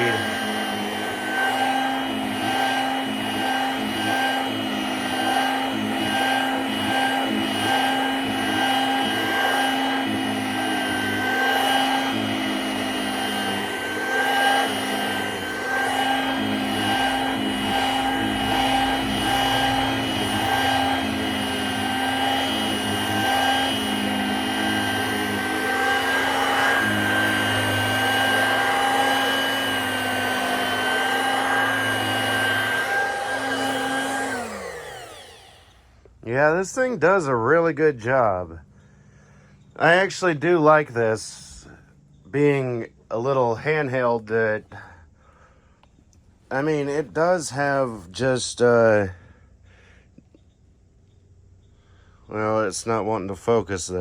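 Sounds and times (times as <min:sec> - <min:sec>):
handheld vacuum motor whine: 0:00.0 - 0:36.3, 0:45.8 - 0:48.1.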